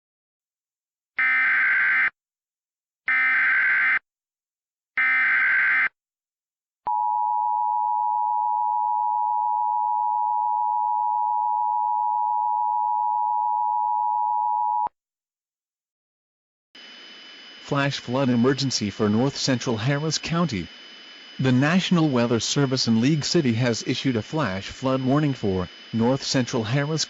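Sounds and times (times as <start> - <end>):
data bursts: 16.8 - 27.0
steady attention tone: 16.8 - 27.0.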